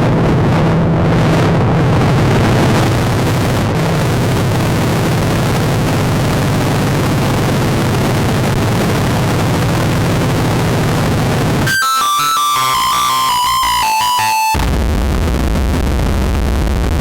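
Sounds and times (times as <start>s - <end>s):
loud static noise: 0.0s - 17.0s
bright synthesizer notes: 11.6s - 14.6s.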